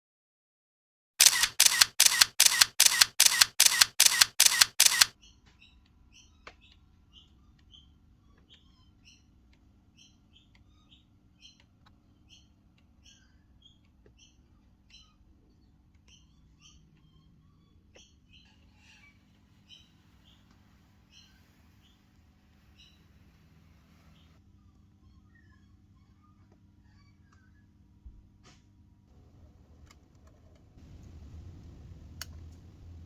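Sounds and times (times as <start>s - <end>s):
camera shutter clicks: 1.2s - 5.2s
faint bird chirps: 4.4s - 27.8s.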